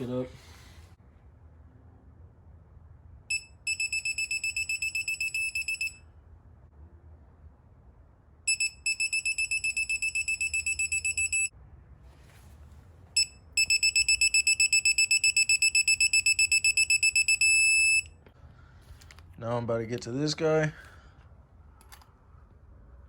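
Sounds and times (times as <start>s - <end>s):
digital torque wrench beeping: 3.3s - 6.0s, 8.5s - 11.5s, 13.2s - 18.1s
steady beep tone: 3.3s - 6.0s, 8.5s - 11.5s, 13.2s - 18.1s.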